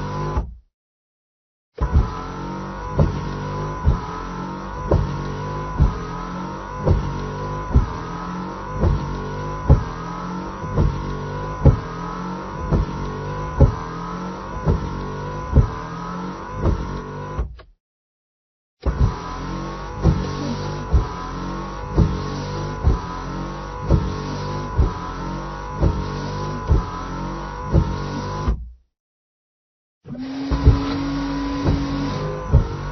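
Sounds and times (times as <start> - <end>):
wiper blade knocking: 2.9 - 4.1, 4.8 - 12.0, 12.6 - 14.0, 14.6 - 16.0, 16.6 - 17.7, 20.0 - 21.2, 21.9 - 23.2, 23.8 - 25.0, 25.7 - 27.0, 27.6 - 28.7, 30.5 - 32.9.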